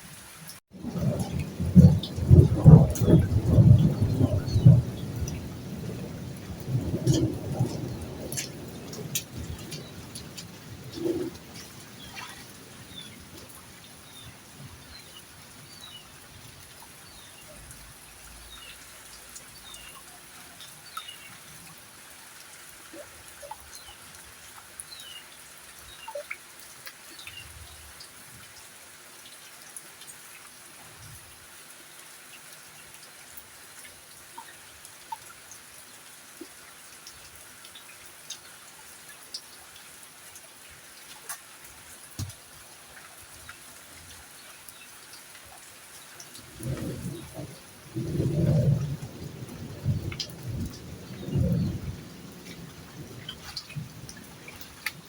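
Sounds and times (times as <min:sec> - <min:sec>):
rain falling: 0:00.0 - 0:55.0
water dripping: 0:00.0 - 0:55.0.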